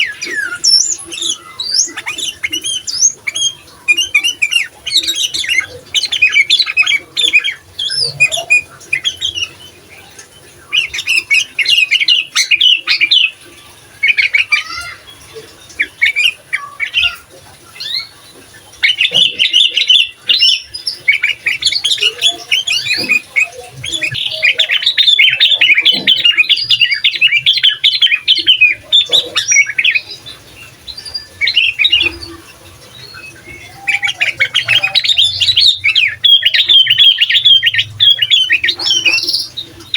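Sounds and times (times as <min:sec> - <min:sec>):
bulbul singing chattering notes: 0:00.0 - 0:39.9.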